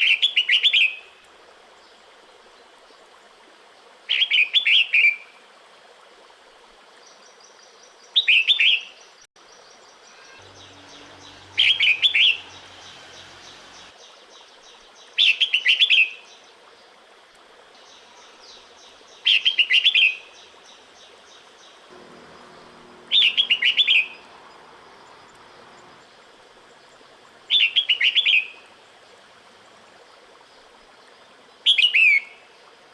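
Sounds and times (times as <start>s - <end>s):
bulbul call of wavering notes: 21.9s - 26.0s.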